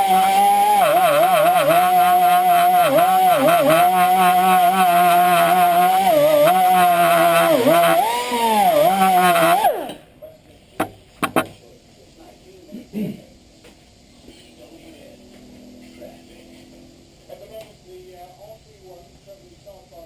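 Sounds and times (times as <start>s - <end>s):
air tool wire brush whine: 0.0s - 10.0s.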